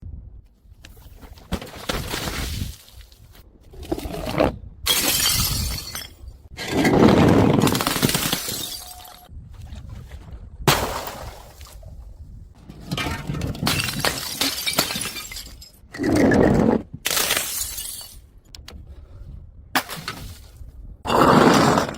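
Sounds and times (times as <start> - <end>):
glass bottles shattering: 4.9 - 6.3, 7.6 - 9.3, 12.9 - 15.9, 17.1 - 18.2.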